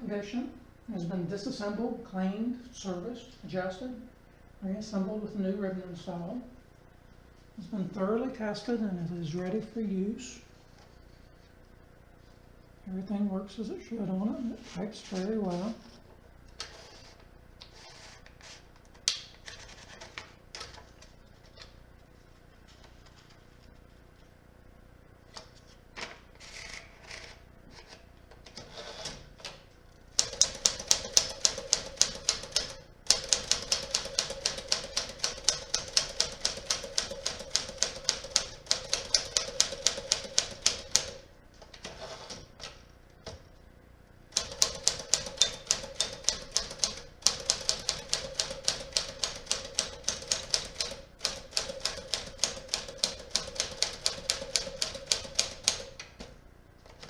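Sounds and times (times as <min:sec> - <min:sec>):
manual typewriter keystrokes: 0:30.2 - 0:41.2, 0:44.3 - 0:56.2.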